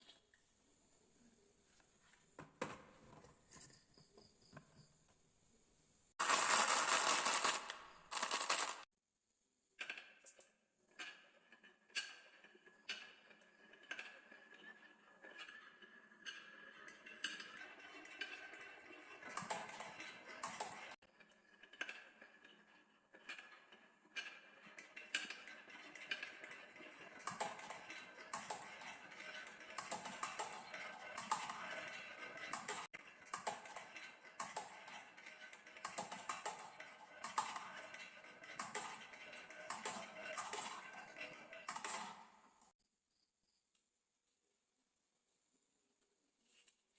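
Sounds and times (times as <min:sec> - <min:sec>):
marbles rattling down wooden run: 0:06.2 - 0:08.8, 0:24.2 - 0:42.2.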